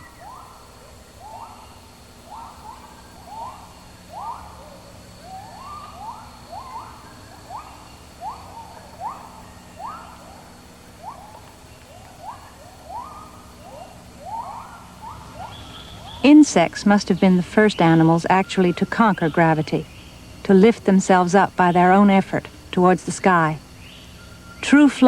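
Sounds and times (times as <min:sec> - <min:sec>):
animal calls sweeping upward: 0:00.0 - 0:16.4
faint high whine: 0:00.0 - 0:25.0.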